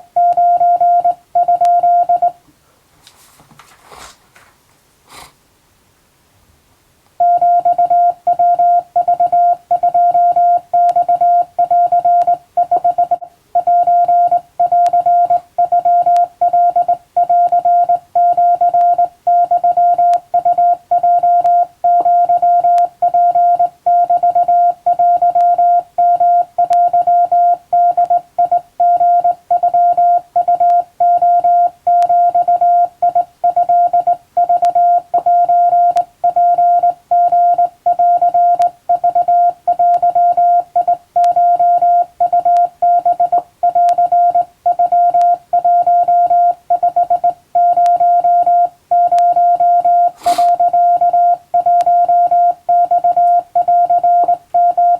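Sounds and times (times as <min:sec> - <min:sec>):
morse code beeps: 0:00.0 - 0:02.4, 0:07.2 - 0:54.9.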